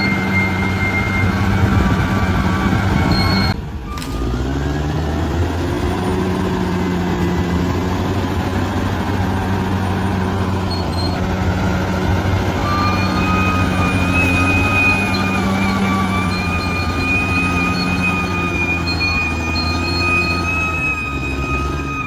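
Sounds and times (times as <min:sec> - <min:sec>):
high whine: 0:00.0 - 0:04.2
bulldozer diesel engine running: 0:00.0 - 0:22.0.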